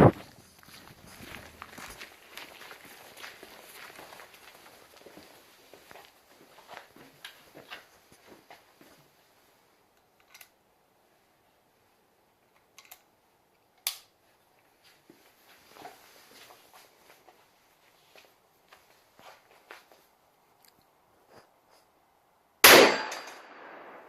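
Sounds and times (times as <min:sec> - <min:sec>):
pistol metallic clicks: 0:10.1 - 0:10.6, 0:12.5 - 0:13.1, 0:13.8 - 0:14.2.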